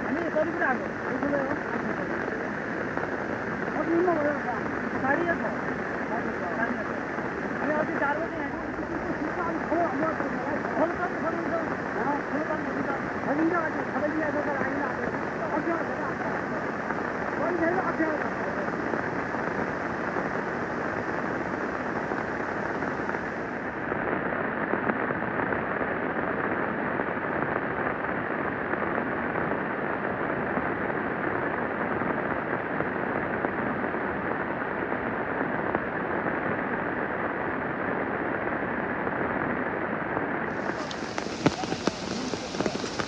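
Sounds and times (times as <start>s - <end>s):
raindrops pattering: 0.0s - 43.0s
steady rushing noise: 0.0s - 43.0s.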